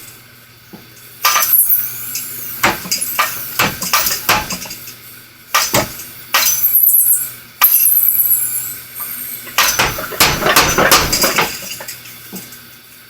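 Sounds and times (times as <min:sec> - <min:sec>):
power hammer clanging: 0:01.2 - 0:04.8, 0:05.6 - 0:08.1, 0:09.4 - 0:12.1
rapid hammer blows and clatter: 0:05.5 - 0:06.7, 0:09.5 - 0:12.0.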